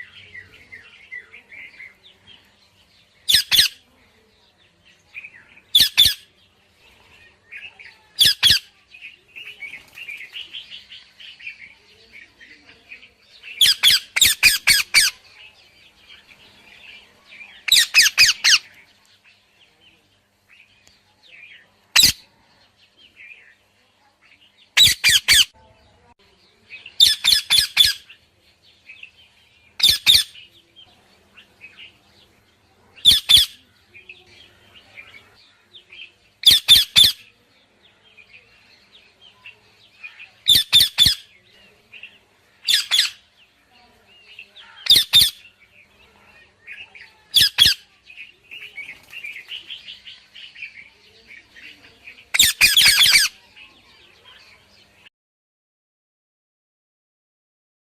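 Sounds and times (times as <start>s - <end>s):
parrot soft chirps: 3.3s - 3.8s, 5.7s - 6.2s, 27.0s - 28.1s, 29.8s - 30.4s, 36.4s - 37.2s, 40.4s - 41.2s, 52.3s - 53.3s.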